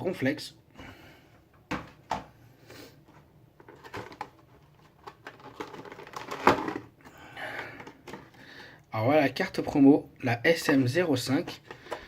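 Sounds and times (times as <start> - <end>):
packaging crinkling and clicking: 3.6 - 8.6.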